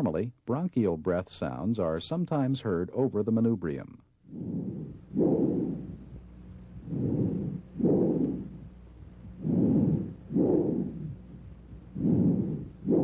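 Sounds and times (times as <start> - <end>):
breath sounds through stethoscope: 4.3 - 6.2, 6.8 - 13.0.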